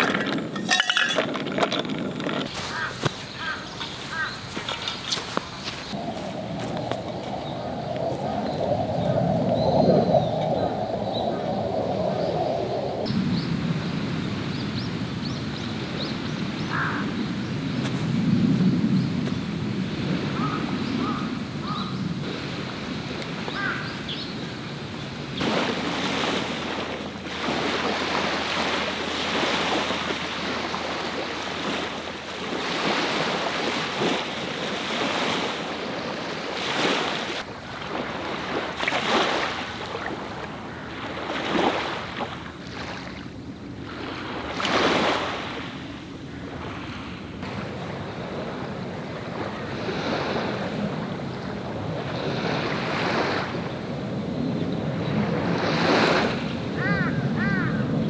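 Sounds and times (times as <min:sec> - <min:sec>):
sea waves washing onto shore: 0:00.0 - 0:13.1, 0:16.7 - 0:54.4
wind rumbling on microphone: 0:00.0 - 0:58.0.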